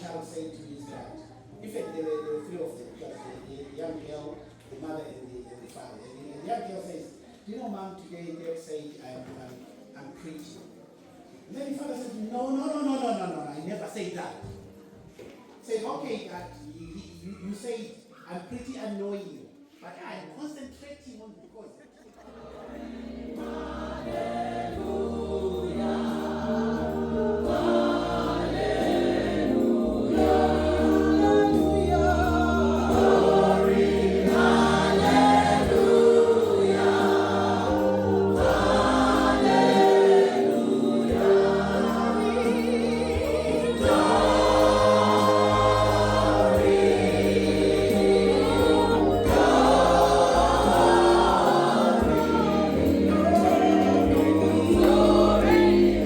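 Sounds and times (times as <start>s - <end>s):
choir singing gospel: 0.0s - 7.2s, 22.2s - 56.0s.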